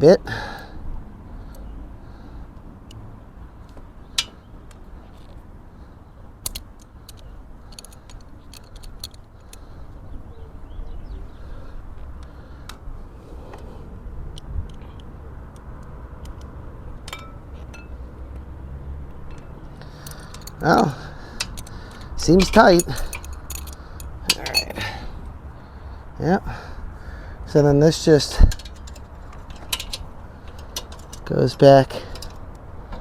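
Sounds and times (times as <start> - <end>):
wrenches clicking on metal fitting: 19.3 - 20.6, 21.3 - 24.8, 28.3 - 32.5.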